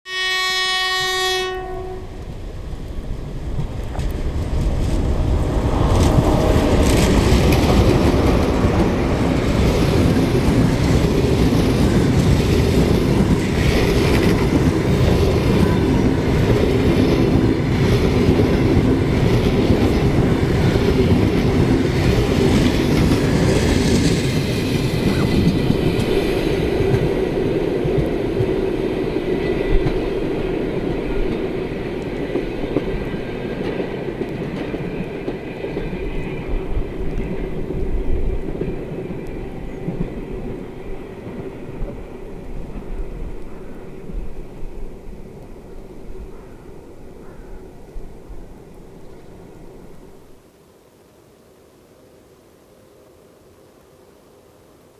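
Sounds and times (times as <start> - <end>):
train horn blast: 0.0 - 2.4
train wheels rumbling on rails: 1.0 - 50.4
clickety-clack over rail joints: 2.1 - 50.4.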